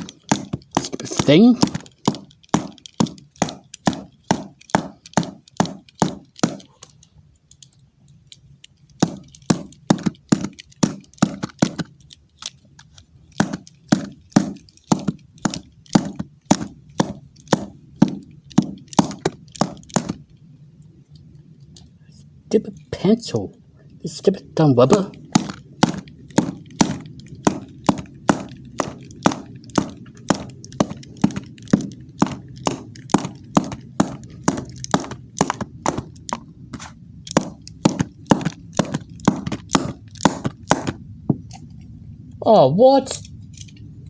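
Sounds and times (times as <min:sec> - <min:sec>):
sharp taps on hard object: 0:00.0 - 0:06.8, 0:13.4 - 0:20.2, 0:24.9 - 0:41.0.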